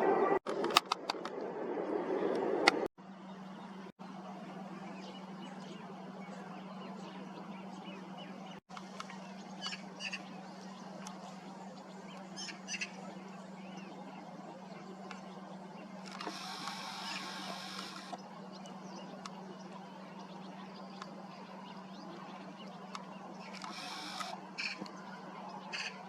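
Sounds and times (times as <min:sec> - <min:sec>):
steady low hum: 0:01.4 - 0:26.0
waterbirds calling: 0:03.0 - 0:26.0.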